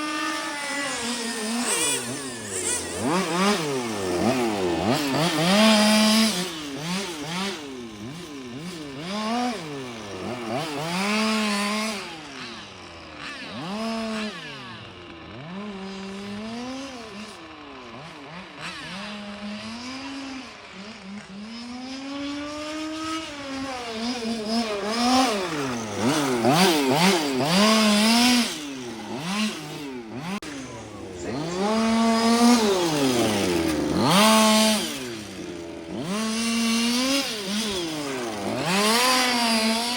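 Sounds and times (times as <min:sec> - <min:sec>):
rc car engines revving: 0:00.0 - 0:39.9.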